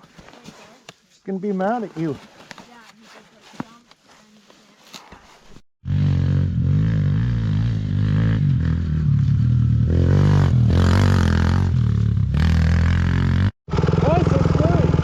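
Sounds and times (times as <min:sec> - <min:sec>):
dirt bike engine revving: 0:05.8 - 0:15.0.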